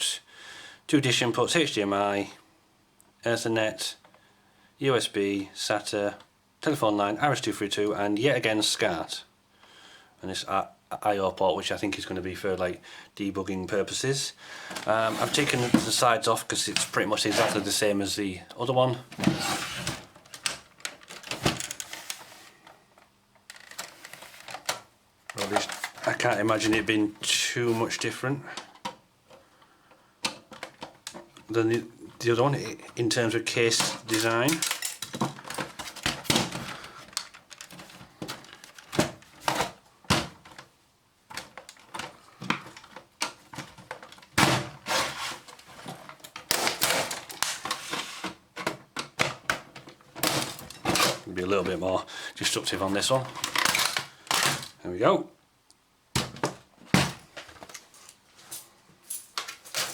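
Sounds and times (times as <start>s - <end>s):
plastic parts clicking and scraping: 14.7s - 17.8s, 19.1s - 28.0s, 28.6s - 31.9s, 32.6s - 40.7s, 41.3s - 51.8s, 52.6s - 54.8s.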